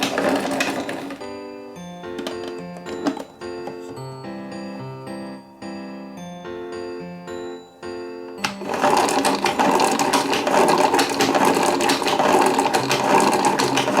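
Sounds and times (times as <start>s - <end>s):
small motor whirring with rattling gears: 8.5s - 14.0s.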